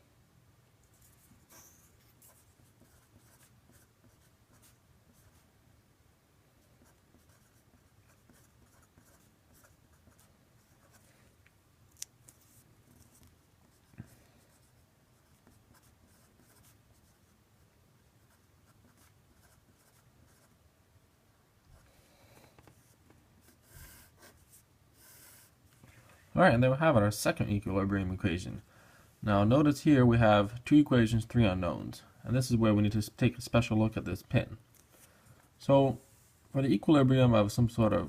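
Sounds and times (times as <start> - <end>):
faint scratching of handwriting: 0.8 - 5.5, 6.6 - 11.4, 12.0 - 20.6, 21.7 - 25.6.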